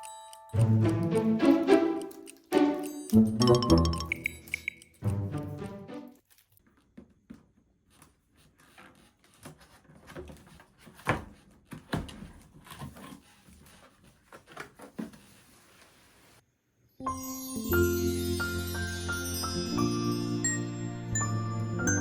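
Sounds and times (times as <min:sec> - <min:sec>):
background music: 0:00.0 - 0:06.2, 0:17.0 - 0:22.0.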